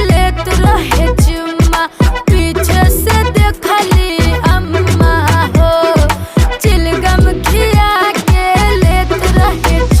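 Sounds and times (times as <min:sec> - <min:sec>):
upbeat song: 0:00.0 - 0:10.0
deep bass-drum hits: 0:02.3 - 0:03.6, 0:04.2 - 0:07.5.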